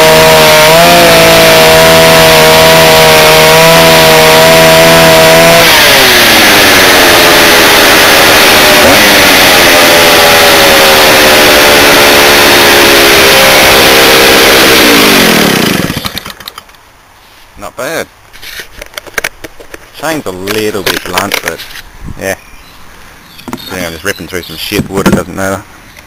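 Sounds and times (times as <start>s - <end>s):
chainsaw engine running: 0.0s - 16.5s.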